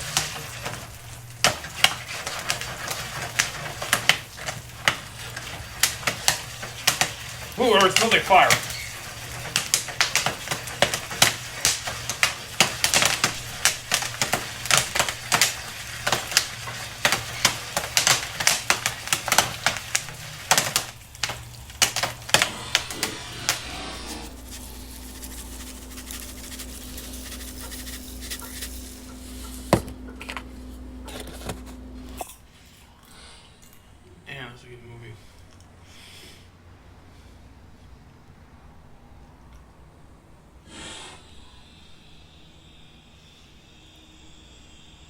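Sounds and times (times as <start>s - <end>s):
popcorn popping: 0.0s - 32.4s
steady low hum: 21.0s - 32.4s.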